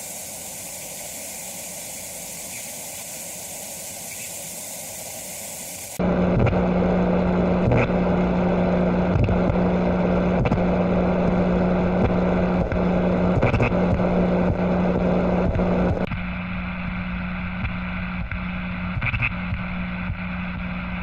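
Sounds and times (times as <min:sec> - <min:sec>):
rushing noise: 0:00.0 - 0:06.0
motor humming: 0:00.0 - 0:16.1.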